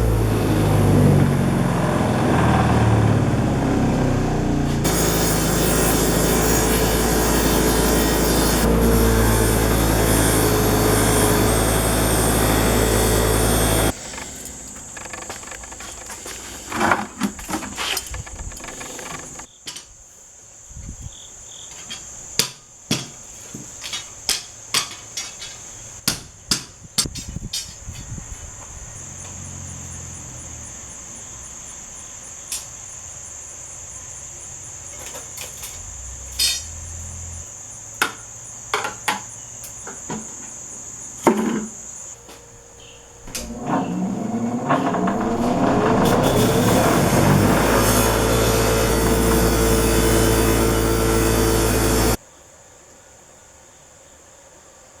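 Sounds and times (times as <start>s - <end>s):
power tool cutting metal: 0.0s - 15.3s, 43.3s - 52.2s
crickets chirring: 13.9s - 45.5s
hand tools tapping on metal: 21.8s - 28.1s.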